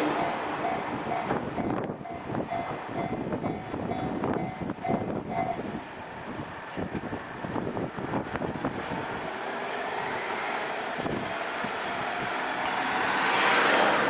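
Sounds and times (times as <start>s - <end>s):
wind buffeting microphone: 0.2s - 9.4s, 10.0s - 12.8s
road vehicle passing: 7.1s - 14.0s.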